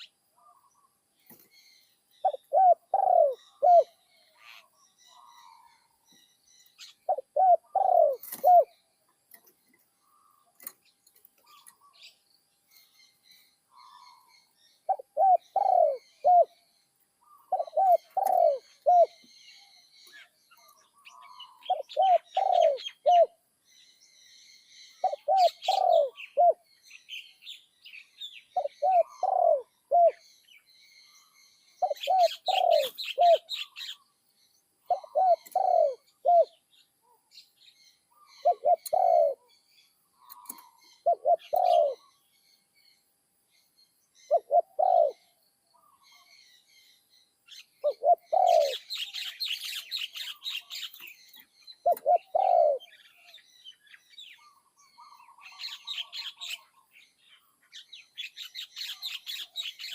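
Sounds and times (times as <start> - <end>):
dove cooing: 2.2 - 5.9, 6.8 - 8.8, 14.9 - 16.6, 17.2 - 19.3, 20.1 - 23.4, 25.0 - 26.6, 28.6 - 30.2, 31.8 - 34.1, 34.8 - 37.2, 38.1 - 39.5, 40.2 - 42.2, 44.3 - 46.3, 47.8 - 51.2, 51.8 - 53.4.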